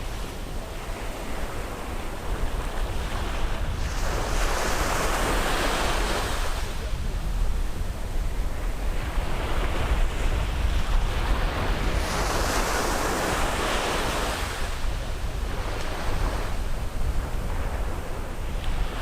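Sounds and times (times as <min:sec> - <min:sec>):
wind rumbling on microphone: 0:00.0 - 0:19.0
ocean waves breaking: 0:08.5 - 0:19.0.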